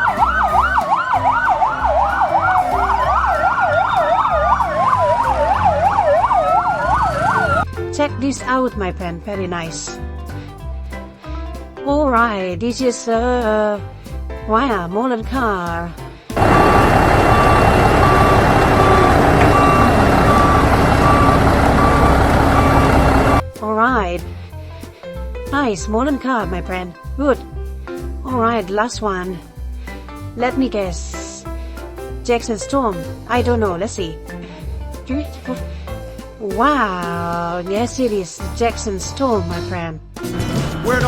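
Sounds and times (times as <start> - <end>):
reversing alarm beeping: 0.0 - 7.6, 16.4 - 23.4
fire truck siren yelp and wail: 0.0 - 7.7, 16.4 - 23.4.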